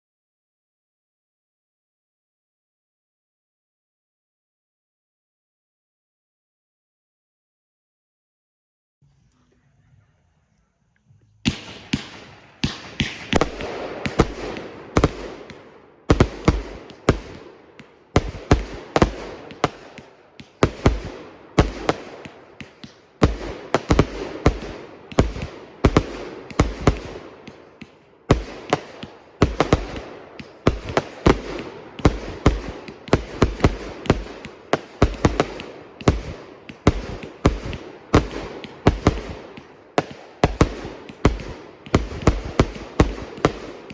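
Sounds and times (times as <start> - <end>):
firework shells bursting: 11.0 - 43.9.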